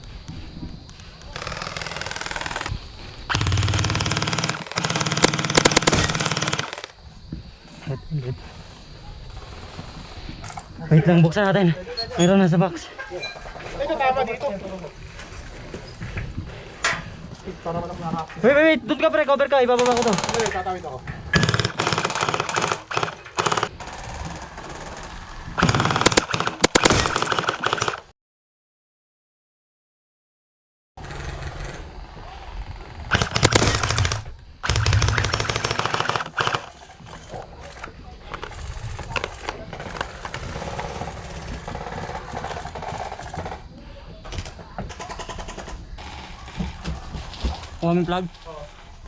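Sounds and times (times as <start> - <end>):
sharp cracks: 0.9 - 7.0, 19.7 - 28.1, 33.1 - 43.6
gel blasters firing bursts: 3.3 - 6.9, 21.3 - 23.7, 25.6 - 28.0, 33.1 - 36.7.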